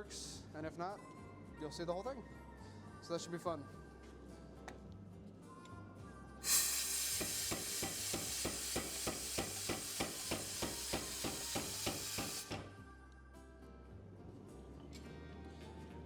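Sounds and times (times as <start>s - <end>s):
loud hiss: 6.4s - 12.8s
power hammer blows: 6.5s - 12.8s.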